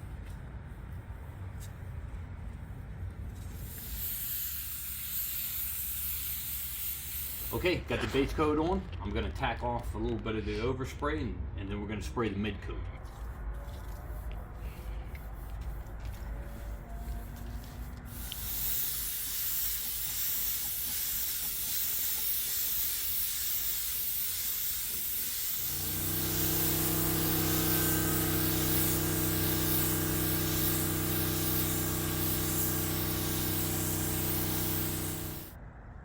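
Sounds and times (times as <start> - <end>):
spray gun hissing: 3.5 - 7.7, 18.1 - 35.6
motor humming: 25.6 - 35.6.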